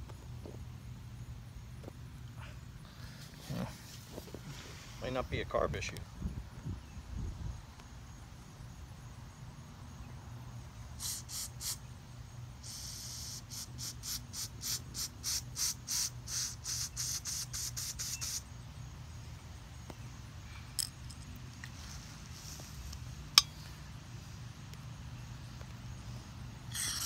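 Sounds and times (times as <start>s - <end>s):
hissing spray bursts: 11.0s - 11.8s, 12.6s - 18.5s.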